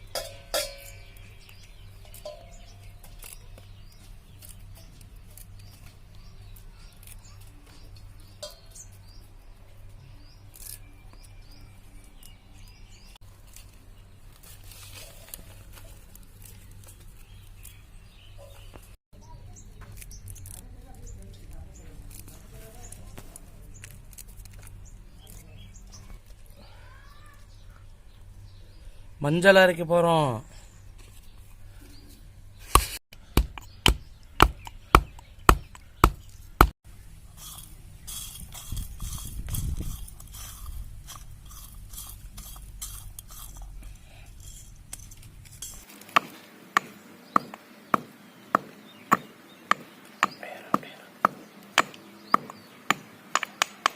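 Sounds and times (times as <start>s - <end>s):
small birds chirping: 0.0s - 53.9s
rough scraping on stone: 37.3s - 46.2s.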